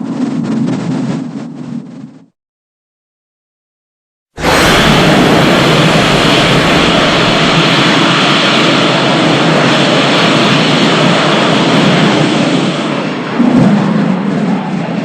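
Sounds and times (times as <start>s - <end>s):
loud jet-like rushing noise: 4.4s - 15.0s.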